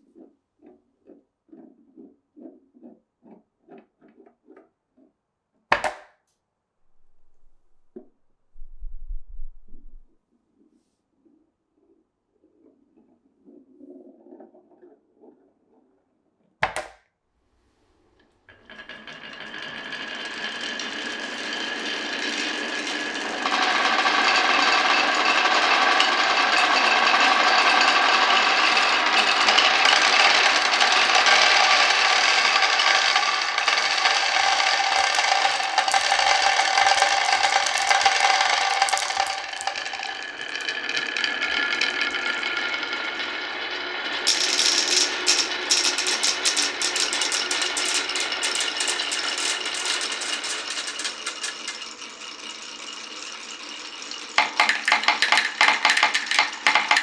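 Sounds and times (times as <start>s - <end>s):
marbles rolling on wood: 5.7s - 6.1s, 6.9s - 10.1s, 16.6s - 17.0s, 18.5s - 57.0s
sharp knock: 5.7s - 6.1s, 16.6s - 17.0s.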